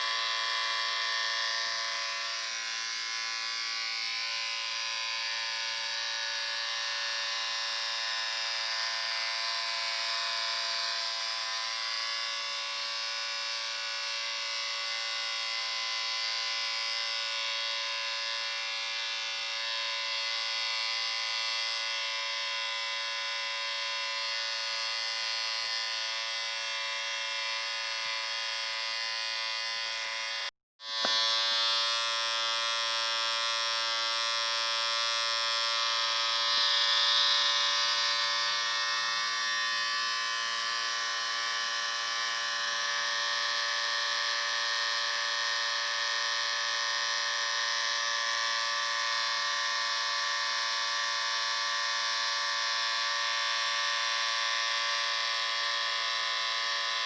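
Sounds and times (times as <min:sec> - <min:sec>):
electric shaver buzzing: 0:00.0 - 0:57.0.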